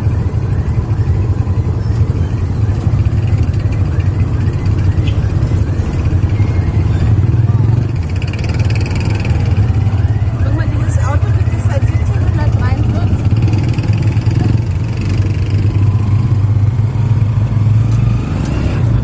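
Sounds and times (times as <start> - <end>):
faint high chirp: 0.0 - 7.9
road rumble: 0.0 - 19.0
tuk-tuk engine running: 0.0 - 19.0.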